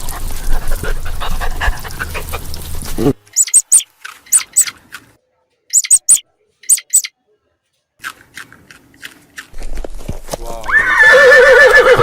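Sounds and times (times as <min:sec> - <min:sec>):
small animal high-pitched calls: 0:03.4 - 0:04.7, 0:05.7 - 0:07.1.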